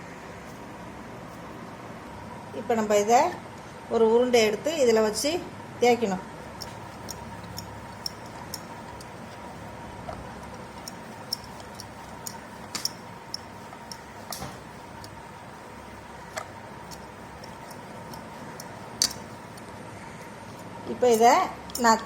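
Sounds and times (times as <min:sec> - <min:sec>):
rolling pin rolling dough: 0:06.5 - 0:22.0.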